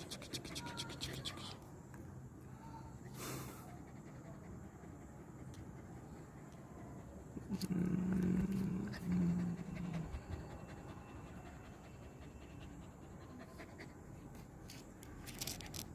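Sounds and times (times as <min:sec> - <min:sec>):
dog low drawn-out vocalising: 0:03.7 - 0:14.2.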